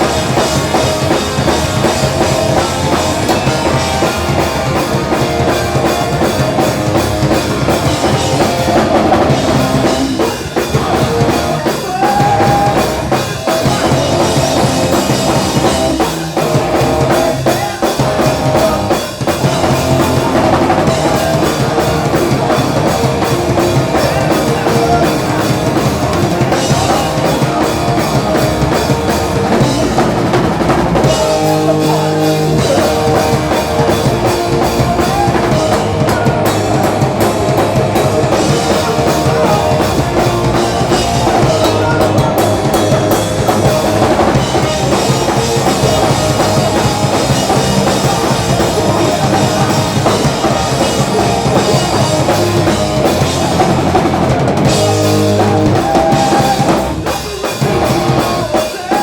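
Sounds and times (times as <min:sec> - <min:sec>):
rock band playing live: 0:00.0 - 0:59.0.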